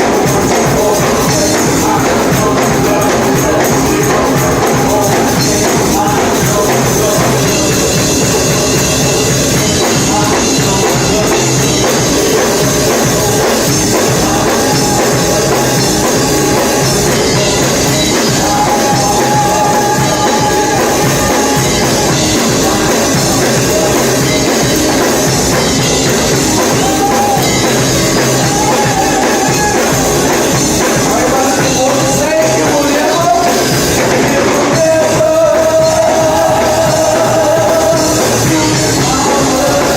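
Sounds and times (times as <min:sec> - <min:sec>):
gospel band with drum kit: 0:00.0 - 0:39.9
singers holding long notes: 0:00.0 - 0:39.9.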